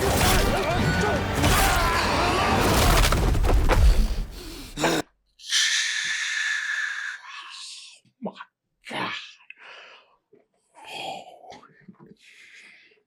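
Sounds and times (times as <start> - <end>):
action film music and effects: 0.0 - 5.0.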